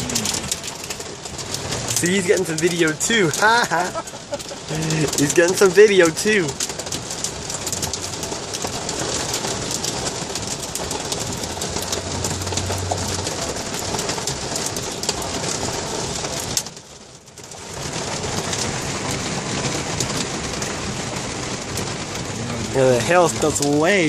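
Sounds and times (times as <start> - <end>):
hail drumming on car roof: 0.0 - 24.0.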